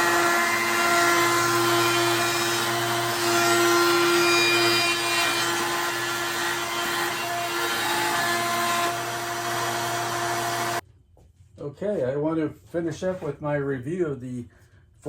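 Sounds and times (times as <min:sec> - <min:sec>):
woodworking power tool whining: 0:00.0 - 0:10.8.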